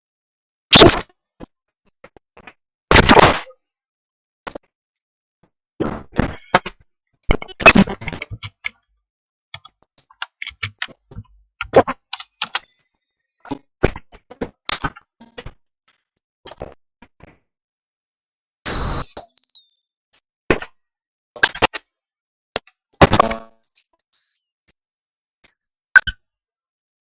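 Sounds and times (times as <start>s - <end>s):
brief high chirps: 18.7s - 19.8s.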